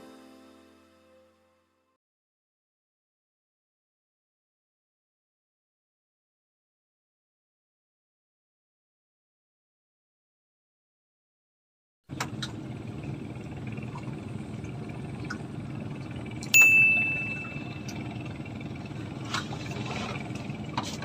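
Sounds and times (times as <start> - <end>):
low background rumble: 12.1 - 21.0
metallic ding: 16.5 - 17.9.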